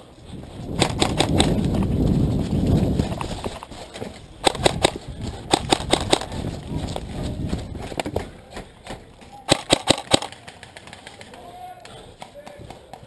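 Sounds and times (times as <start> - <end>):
camera handling rumble: 0.6 - 8.2.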